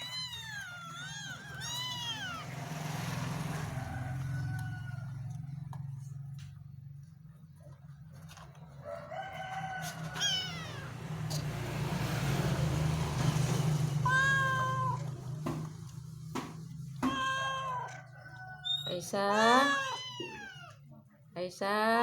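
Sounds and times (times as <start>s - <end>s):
cat meowing: 0.0s - 2.9s, 10.1s - 11.0s, 14.0s - 15.4s, 16.8s - 20.9s.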